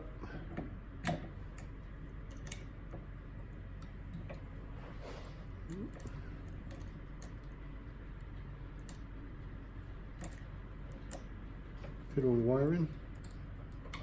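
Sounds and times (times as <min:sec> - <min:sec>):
steady low hum: 0:00.0 - 0:14.0
metallic clicks of lock picking: 0:02.3 - 0:02.7.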